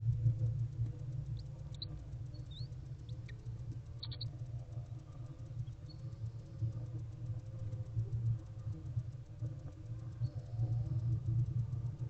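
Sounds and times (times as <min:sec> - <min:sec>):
low electrical hum: 0:00.0 - 0:12.0
faint high chirps: 0:01.3 - 0:06.3.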